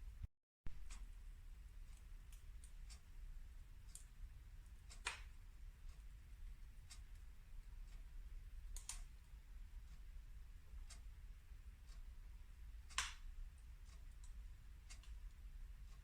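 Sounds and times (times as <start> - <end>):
faint low rumble: 0.0 - 16.0
wood fire crackling: 4.9 - 5.4, 8.7 - 9.3, 12.9 - 15.4
sharp pops from fire: 5.0 - 5.3, 12.9 - 13.2.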